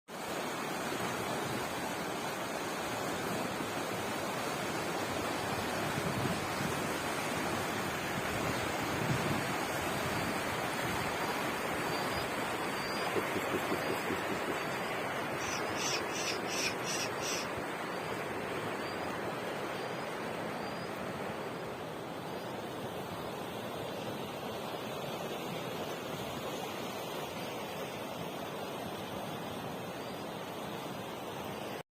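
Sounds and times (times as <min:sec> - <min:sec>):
wind on microphone: 0:08.2 - 0:15.8.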